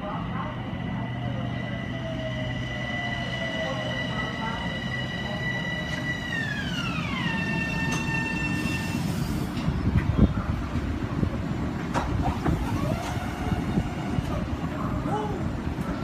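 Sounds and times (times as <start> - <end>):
low train rumble: 0.0 - 16.0
electric train motor whine: 0.8 - 9.4, 12.3 - 14.6.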